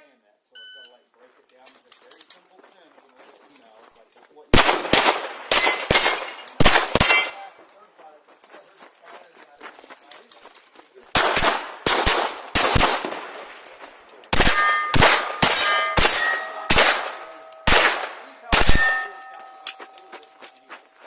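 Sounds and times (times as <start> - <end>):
pistol shots: 4.5 - 7.5, 11.1 - 20.1
steel targets ringing: 4.6 - 7.5, 14.3 - 20.8.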